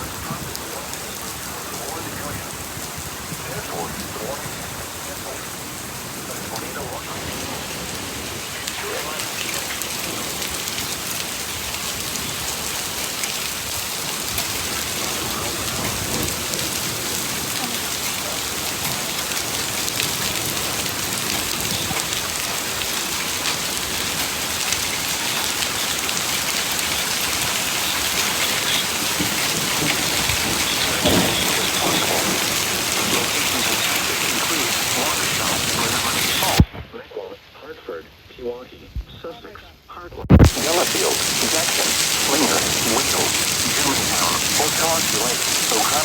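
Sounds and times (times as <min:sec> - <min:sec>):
heavy rain pouring: 0:00.0 - 0:36.8, 0:40.3 - 0:46.0.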